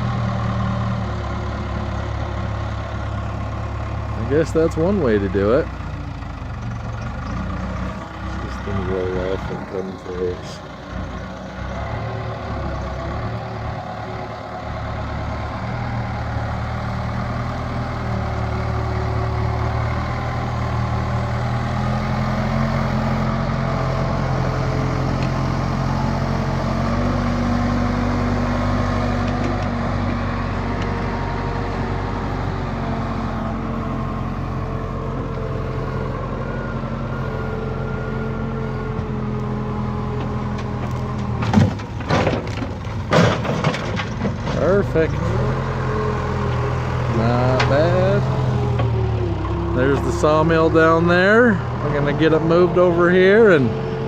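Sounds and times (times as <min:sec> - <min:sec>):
backhoe diesel engine under load: 0:00.0 - 0:54.0.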